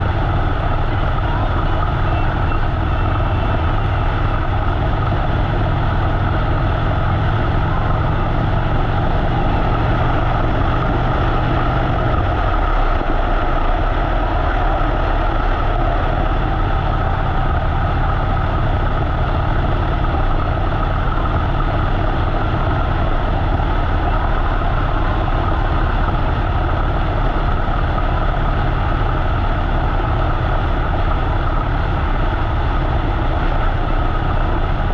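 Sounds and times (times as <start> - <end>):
motorcycle engine running: 0.0 - 34.9
wind noise on microphone: 0.0 - 34.9.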